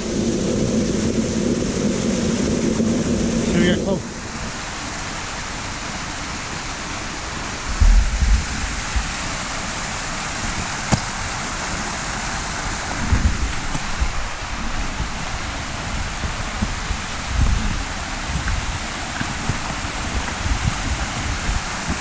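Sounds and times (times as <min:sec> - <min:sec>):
water rushing: 0:00.0 - 0:22.0
low thumps: 0:07.7 - 0:09.6, 0:13.0 - 0:22.0.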